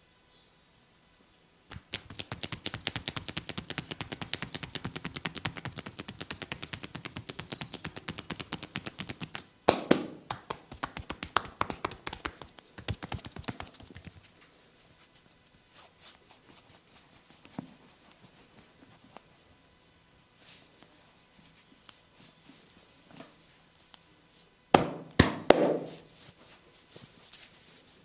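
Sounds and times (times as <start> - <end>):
hand slap: 1.7 - 14.2, 24.8 - 26.0
hands tapping on a head: 1.7 - 14.3, 24.8 - 26.0.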